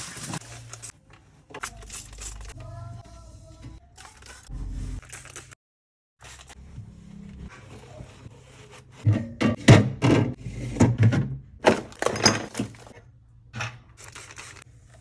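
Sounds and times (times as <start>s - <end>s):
hard items clunking and knocking: 9.0s - 13.9s.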